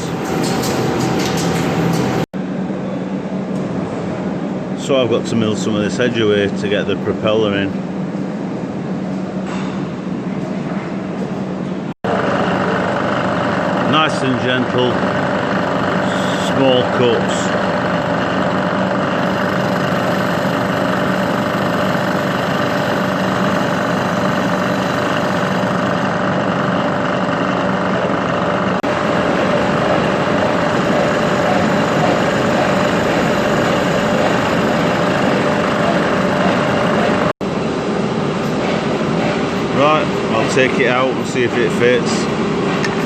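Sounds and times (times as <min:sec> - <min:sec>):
milling machine humming: 0:00.0 - 0:02.3, 0:12.0 - 0:43.0.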